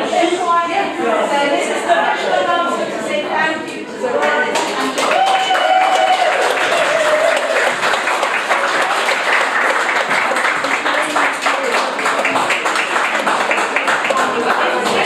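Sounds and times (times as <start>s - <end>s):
audience clapping: 4.2s - 15.0s.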